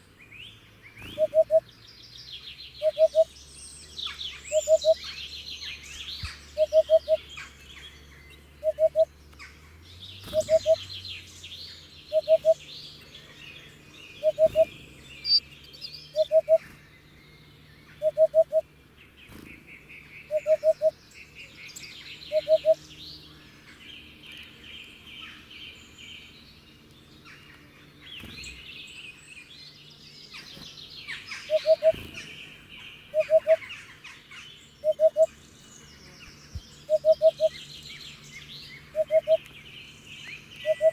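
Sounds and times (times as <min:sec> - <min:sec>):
songbirds chirping: 0:00.0 - 0:40.9
hoopoe calling: 0:01.0 - 0:01.7, 0:02.8 - 0:03.4, 0:04.3 - 0:09.2, 0:10.2 - 0:10.9, 0:12.0 - 0:16.8, 0:17.9 - 0:18.8, 0:20.0 - 0:22.8, 0:31.1 - 0:35.4, 0:36.8 - 0:39.5, 0:40.4 - 0:40.9.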